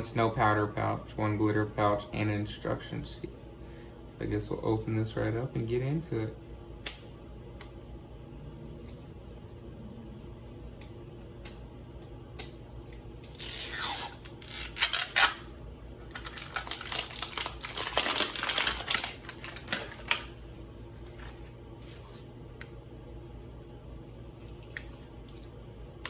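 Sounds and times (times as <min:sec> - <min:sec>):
packaging rustling and tearing: 0:13.3 - 0:15.4, 0:16.0 - 0:20.5.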